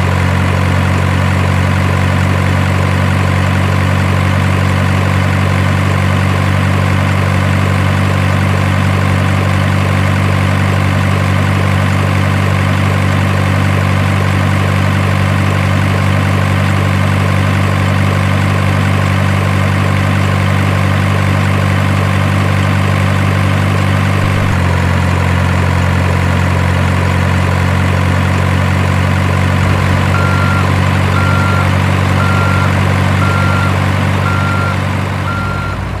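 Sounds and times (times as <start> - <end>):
heavy truck engine idling: 0.0 - 36.0
high beeps: 30.1 - 35.8.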